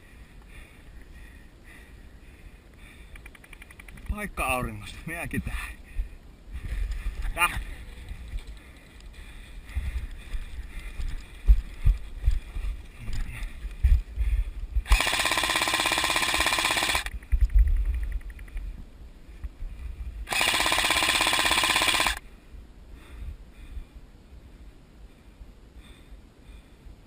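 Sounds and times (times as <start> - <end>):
airsoft gun full-auto bursts: 14.9 - 17.2, 20.3 - 22.2.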